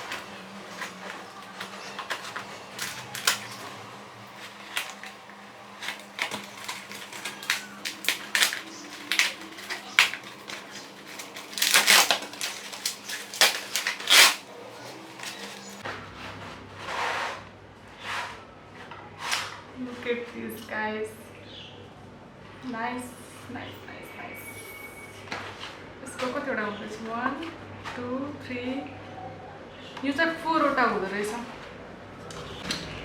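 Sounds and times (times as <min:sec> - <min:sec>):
packaging crinkling and rustling: 0:00.0 - 0:15.8.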